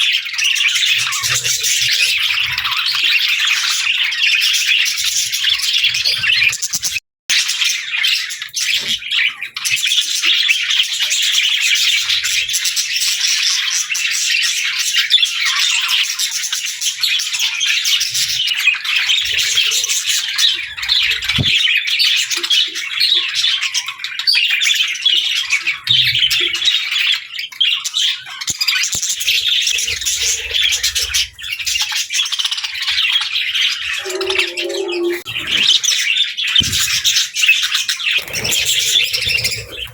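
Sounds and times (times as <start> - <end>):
budgerigars chirping: 38.0 - 39.9.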